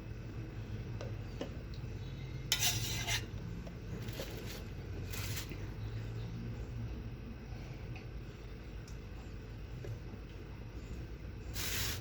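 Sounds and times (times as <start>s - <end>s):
metal spoon stirring in a pot: 2.5s - 3.3s
spoon scraping pot: 2.5s - 3.3s.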